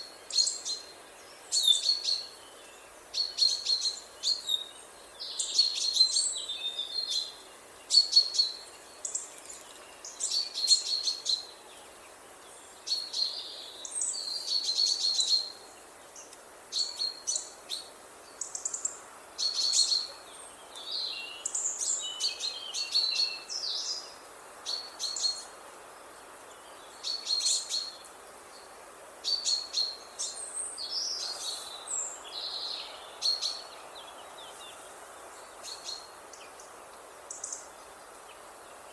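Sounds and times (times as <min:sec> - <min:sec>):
chaffinch chirping and singing: 0:00.0 - 0:25.6, 0:26.5 - 0:38.9
faint background hiss: 0:00.0 - 0:38.9.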